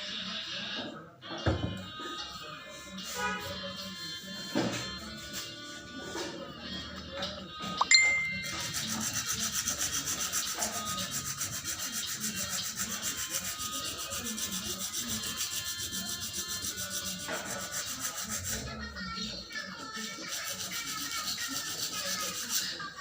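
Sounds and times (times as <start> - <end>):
sandpaper rubbing by hand: 8.6 - 18.7, 20.1 - 22.8.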